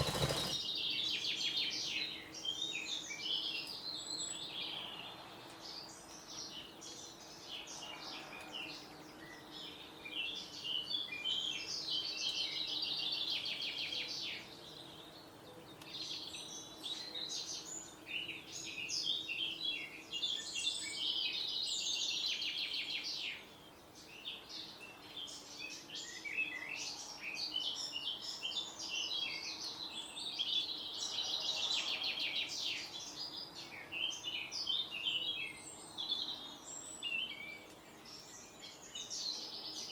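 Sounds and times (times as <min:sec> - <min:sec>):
songbirds trilling: 0:00.0 - 0:01.0.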